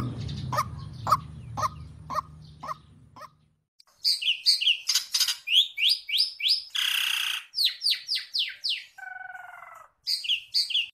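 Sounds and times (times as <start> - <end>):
waterhen calling: 0.0 - 3.4.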